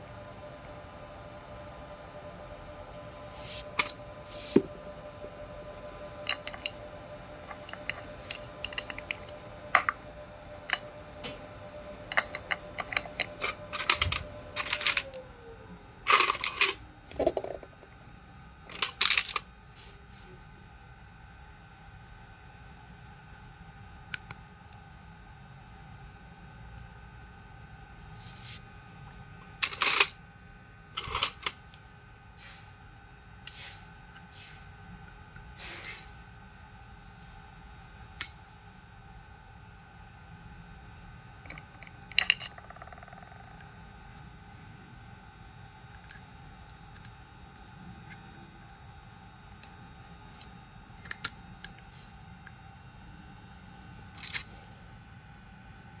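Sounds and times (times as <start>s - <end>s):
low background hum: 0.0s - 56.0s
metal tools clinking on workbench: 6.2s - 6.8s, 7.5s - 10.0s, 12.1s - 15.1s, 16.1s - 16.8s, 41.5s - 42.9s.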